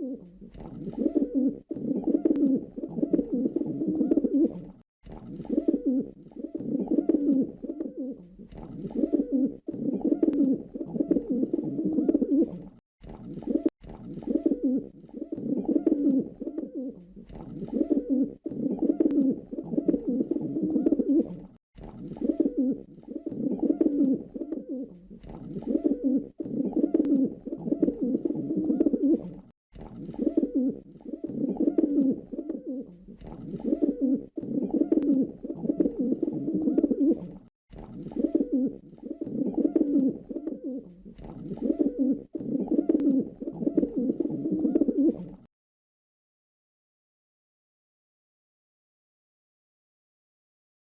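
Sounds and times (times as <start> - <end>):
pigeon cooing: 0.0 - 4.8, 5.4 - 12.8, 13.4 - 29.5, 30.1 - 37.5, 38.1 - 45.5.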